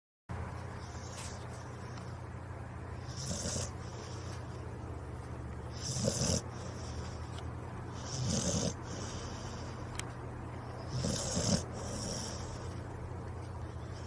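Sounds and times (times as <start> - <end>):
steady low hum: 0.3 - 14.0
dog snoring: 3.0 - 4.5, 5.7 - 7.3, 7.9 - 9.8, 10.8 - 12.8.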